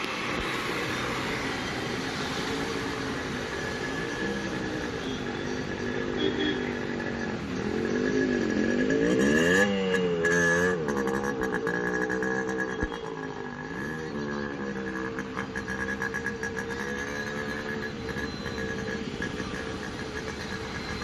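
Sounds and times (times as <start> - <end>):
vehicle engine revving: 6.9 - 21.0.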